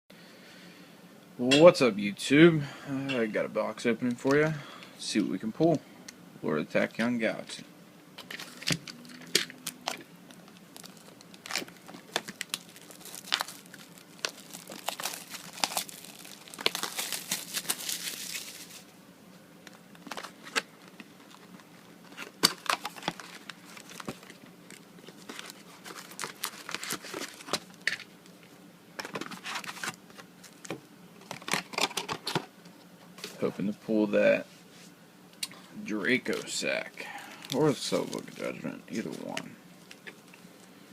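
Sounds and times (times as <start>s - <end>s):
packaging crinkling: 8.2s - 18.9s, 19.6s - 28.4s, 29.0s - 32.4s, 36.2s - 40.4s
packaging tearing: 8.3s - 18.8s, 19.7s - 28.0s.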